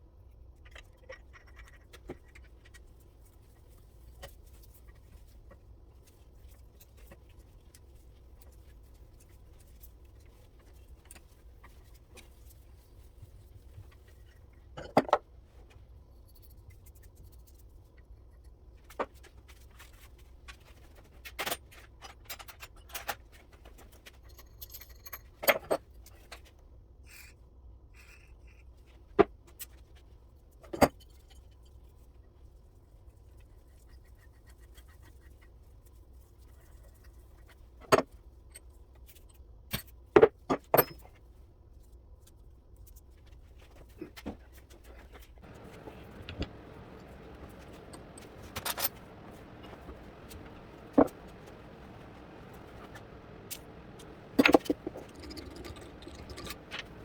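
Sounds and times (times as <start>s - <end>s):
metal vise parts clinking: 45.5s - 57.0s.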